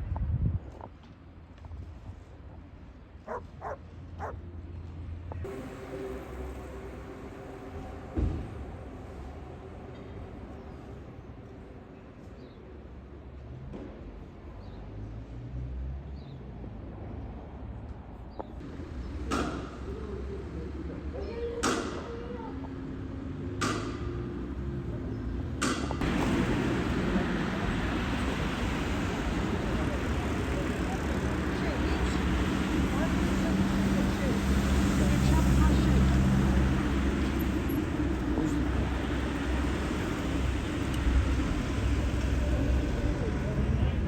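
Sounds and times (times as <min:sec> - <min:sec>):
low city rumble: 0:00.0 - 0:44.0
dog barking: 0:03.3 - 0:04.4
steady low hum: 0:05.4 - 0:13.3.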